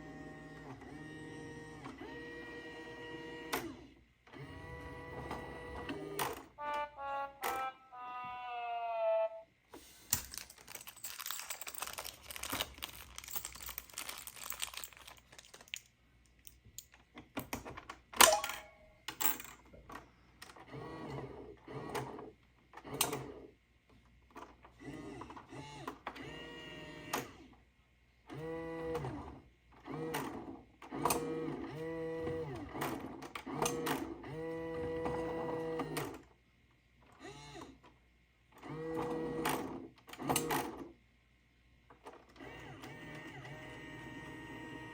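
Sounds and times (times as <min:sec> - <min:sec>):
whirring motor: 0:00.0 - 0:06.4.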